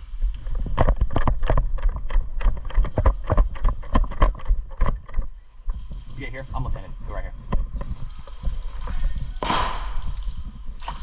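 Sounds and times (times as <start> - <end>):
wind on microphone: 0.0 - 11.0
airsoft guns firing: 9.4 - 11.0.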